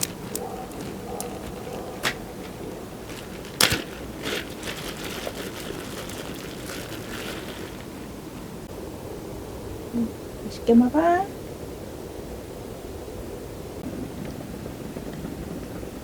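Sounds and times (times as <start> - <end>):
gas burner hissing: 0.0 - 4.6.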